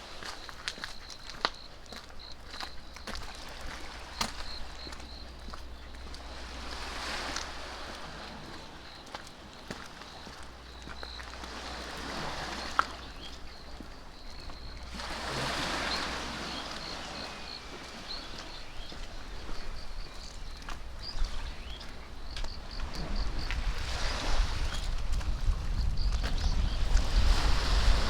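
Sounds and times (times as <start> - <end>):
hiss of wind or water: 0.0 - 0.9, 3.2 - 28.0
faint high chirps: 10.0 - 11.4.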